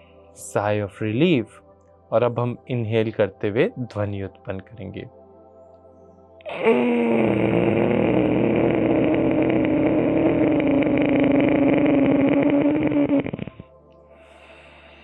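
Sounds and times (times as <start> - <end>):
man breathing with rasping sound: 0.0 - 0.4, 13.5 - 15.0.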